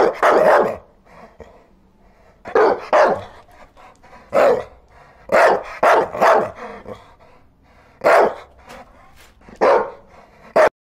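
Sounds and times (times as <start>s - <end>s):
dog barking: 0.0s - 0.9s, 2.5s - 3.4s, 4.3s - 4.7s, 5.3s - 6.6s, 8.0s - 8.5s, 9.5s - 10.7s.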